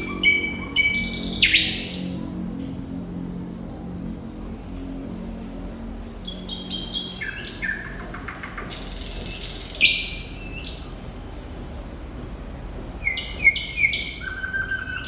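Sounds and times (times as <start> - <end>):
nightingale singing: 6.4 - 11.0, 12.6 - 15.0.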